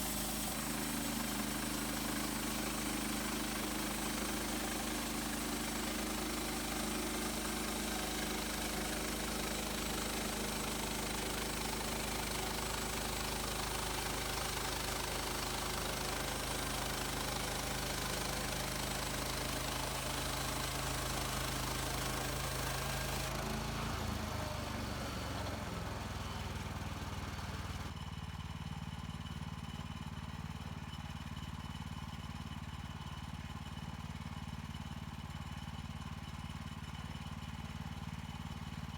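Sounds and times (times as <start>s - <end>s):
saw hissing: 0.0s - 9.7s
petrol engine running: 0.0s - 28.0s.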